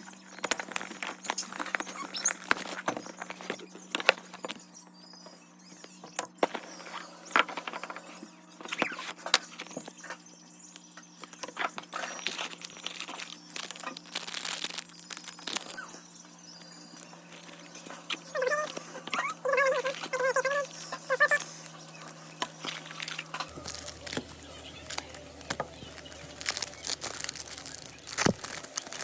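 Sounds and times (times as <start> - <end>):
steady low hum: 10.0 - 29.0
plastic wrap and cardboard crinkling: 11.8 - 29.0.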